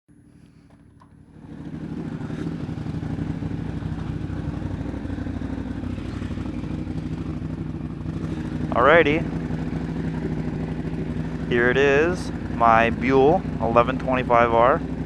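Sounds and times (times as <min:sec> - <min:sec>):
motorcycle engine idling: 0:00.1 - 0:15.0.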